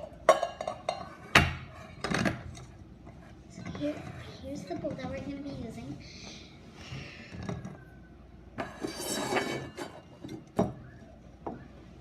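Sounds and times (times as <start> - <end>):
bowl clinking: 0.0 - 1.2
bowl scraping rub: 8.6 - 10.2.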